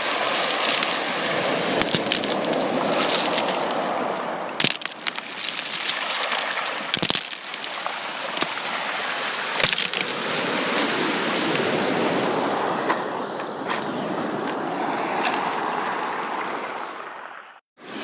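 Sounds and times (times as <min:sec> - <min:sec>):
ocean surf washing on beach: 0:00.0 - 0:18.0.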